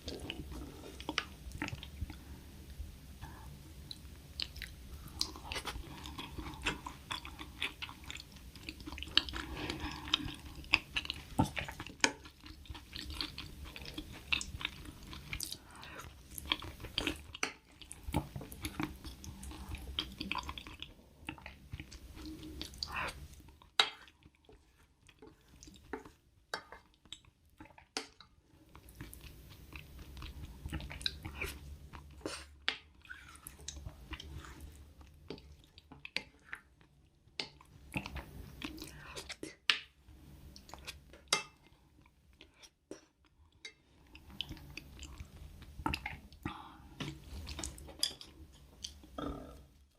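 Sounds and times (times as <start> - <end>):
chewing and mouth smacks: 44.1 - 49.5.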